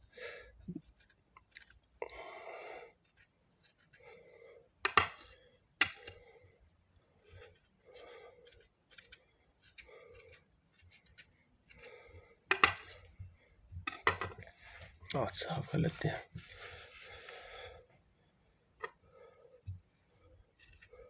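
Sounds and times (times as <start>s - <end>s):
scraping charred fruit skin: 0.0s - 4.2s, 7.2s - 12.1s, 20.5s - 21.0s.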